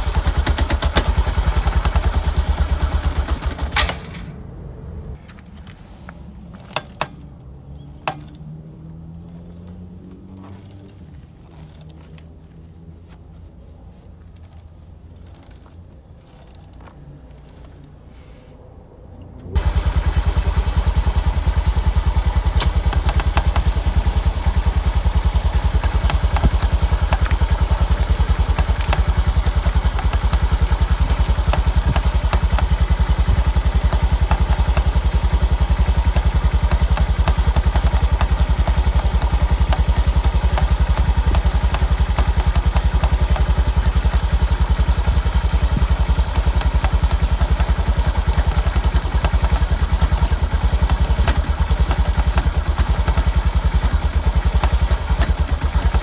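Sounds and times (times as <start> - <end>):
motorcycle engine running: 0.0 - 4.2, 19.6 - 56.0.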